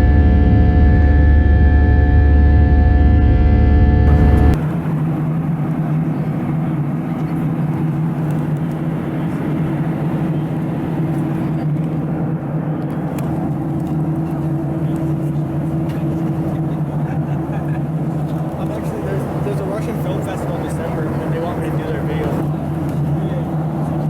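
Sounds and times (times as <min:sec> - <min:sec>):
airplane cabin engine drone: 0:00.0 - 0:24.0.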